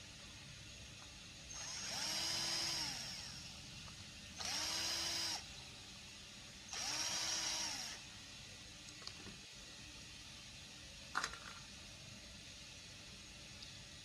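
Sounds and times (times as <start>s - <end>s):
power screwdriver whirring: 4.4s - 5.4s, 6.7s - 8.0s.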